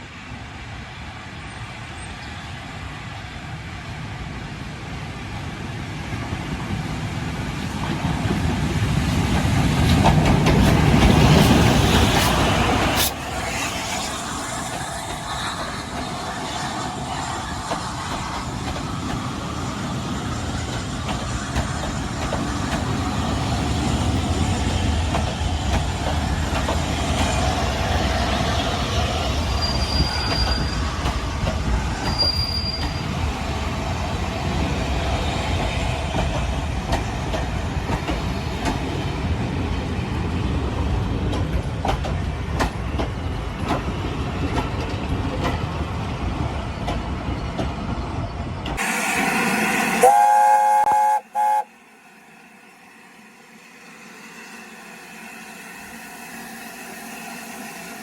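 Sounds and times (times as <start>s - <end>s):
train rumbling along rails: 0.0s - 58.0s
faint high wheel squeal: 29.4s - 31.0s, 32.0s - 33.2s.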